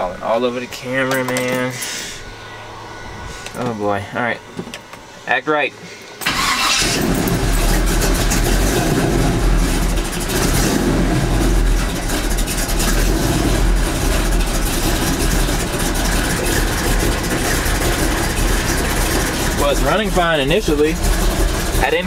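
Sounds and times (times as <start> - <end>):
truck engine idling: 6.2 - 22.0.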